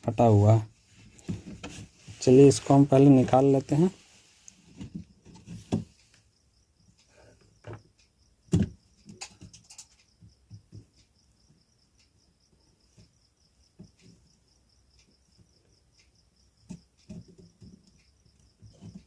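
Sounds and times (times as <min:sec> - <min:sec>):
hand tools clicking on circuit board: 0:08.8 - 0:11.4.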